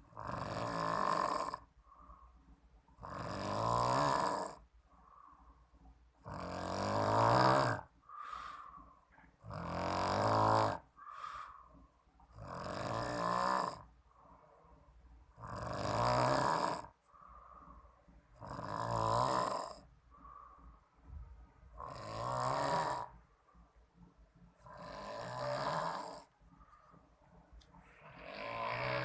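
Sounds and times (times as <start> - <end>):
person snoring loudly: 0.1 - 1.7, 3.0 - 4.7, 6.2 - 8.6, 9.4 - 11.5, 12.3 - 13.9, 15.4 - 17.0, 18.4 - 19.9, 21.7 - 23.2, 24.7 - 26.3, 28.0 - 29.0.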